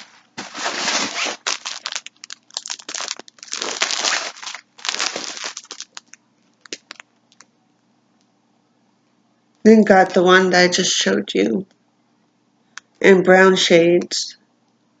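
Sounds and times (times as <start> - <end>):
plastic packaging crinkling: 0.0 - 7.5.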